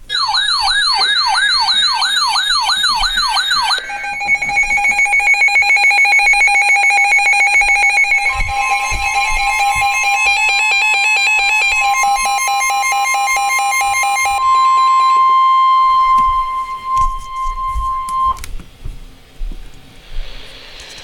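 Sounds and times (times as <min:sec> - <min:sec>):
steady high alert tone: 0:00.0 - 0:18.4
pulsing two-note alert tone: 0:01.1 - 0:18.4.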